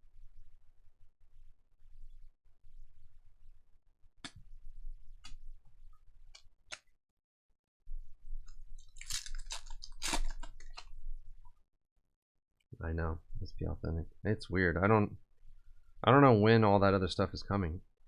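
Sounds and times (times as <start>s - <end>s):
foil wrappers crinkling and rustling: 8.8s - 10.9s.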